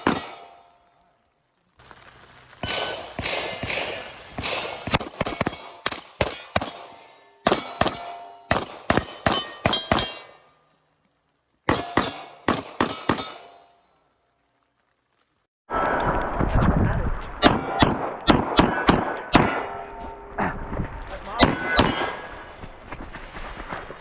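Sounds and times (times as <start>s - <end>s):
steel plate ringing: 0.0s - 0.7s, 2.6s - 10.6s, 11.7s - 13.7s
pistol shots: 2.6s - 10.4s, 11.7s - 13.6s.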